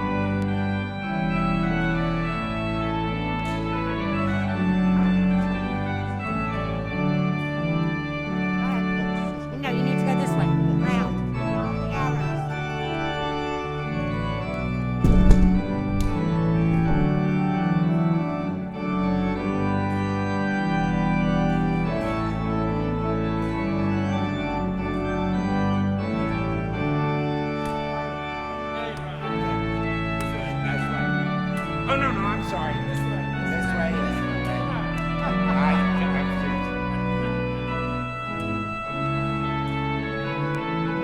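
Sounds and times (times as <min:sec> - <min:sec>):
church organ playing a hymn: 0:00.0 - 0:41.0
low thump: 0:15.0 - 0:17.2.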